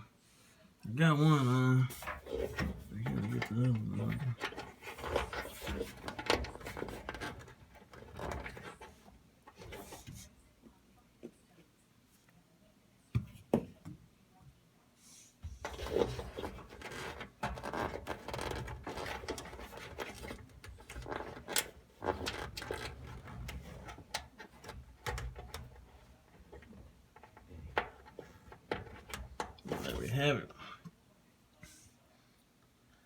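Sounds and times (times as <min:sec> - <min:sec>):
rubbing and scraping against metal: 0:01.9 - 0:10.3, 0:15.6 - 0:30.2.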